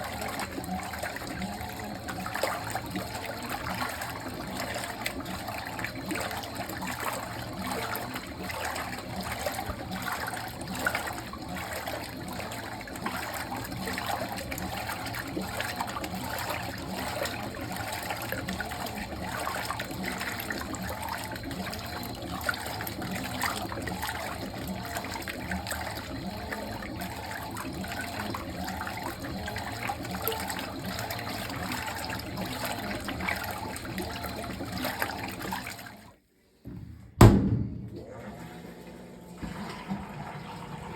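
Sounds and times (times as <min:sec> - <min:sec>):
water splashing into washing machine: 0:00.0 - 0:40.9.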